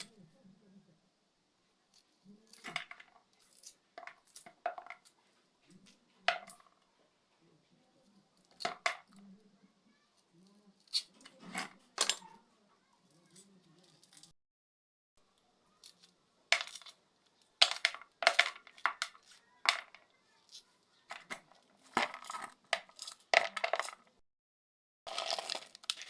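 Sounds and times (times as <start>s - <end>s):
cookware and utensils clinking: 6.2s - 6.7s, 10.8s - 12.5s.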